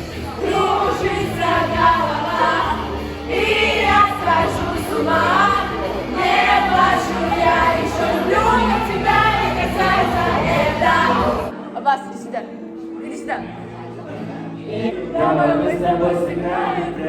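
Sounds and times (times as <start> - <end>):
group singing: 0.0 - 11.5, 14.7 - 17.0
pop backing track: 0.0 - 11.5.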